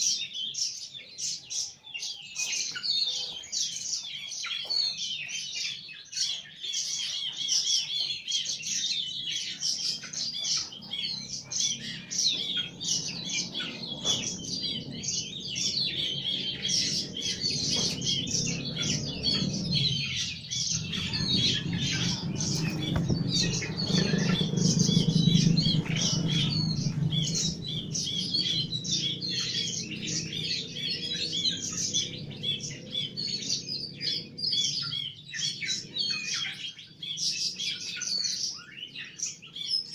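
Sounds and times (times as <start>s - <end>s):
small birds chirping: 0.0s - 39.9s
low rumble: 10.9s - 34.6s.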